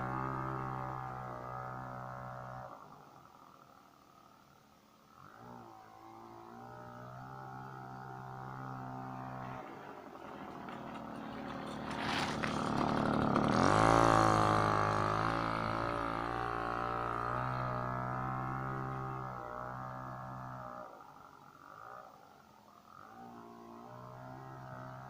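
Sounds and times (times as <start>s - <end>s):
moped two-stroke engine revving: 0.0s - 3.6s, 6.6s - 22.0s.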